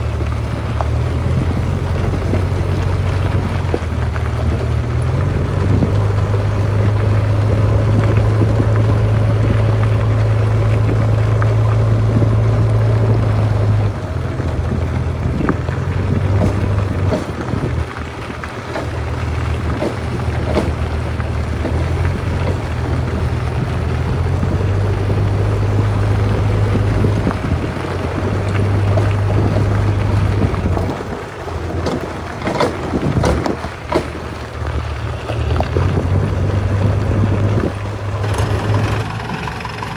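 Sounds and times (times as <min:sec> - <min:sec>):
backhoe diesel engine running: 0:00.0 - 0:39.9
knocks and clanks: 0:14.7 - 0:24.3, 0:26.6 - 0:37.0.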